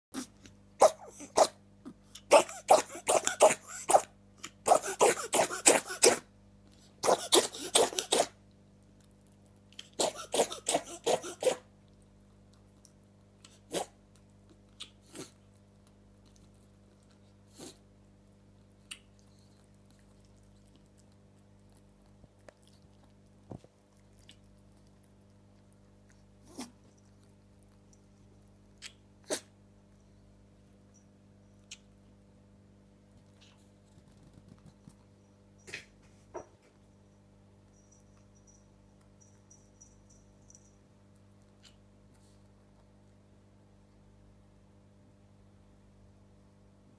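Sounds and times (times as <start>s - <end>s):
pet sneezing: 0.2s - 1.6s, 2.3s - 6.3s, 7.0s - 8.4s, 9.9s - 11.7s.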